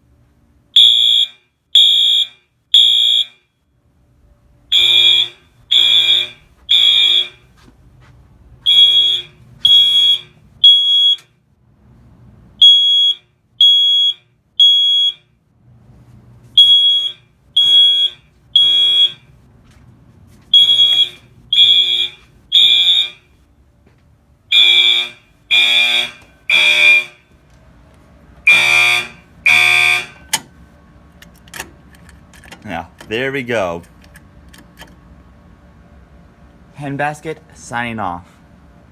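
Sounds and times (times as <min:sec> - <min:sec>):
fire alarm horn beeps: 0:00.7 - 0:03.6, 0:04.7 - 0:07.6, 0:08.6 - 0:11.4, 0:12.6 - 0:15.4, 0:16.6 - 0:19.3, 0:20.5 - 0:23.4, 0:24.5 - 0:27.4, 0:28.4 - 0:30.5.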